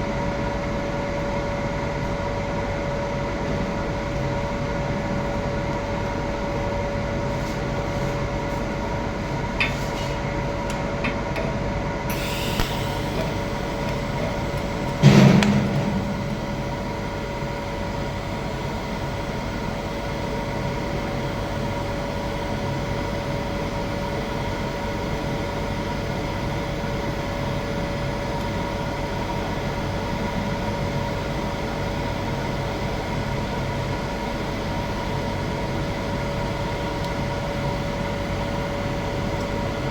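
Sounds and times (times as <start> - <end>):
welding set hum and whine: 0.0 - 39.9
welding arc hiss: 12.1 - 15.0
sharp loud knock: 15.0 - 17.0.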